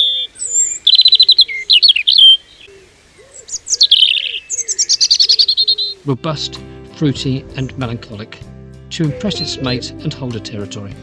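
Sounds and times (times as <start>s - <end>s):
robin singing trills: 0.0s - 6.1s.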